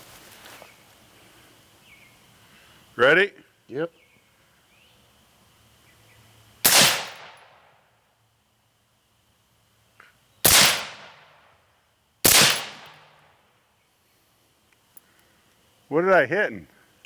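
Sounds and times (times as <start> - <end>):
gunshots with echo: 6.7 - 7.4, 10.5 - 11.1, 12.3 - 13.0.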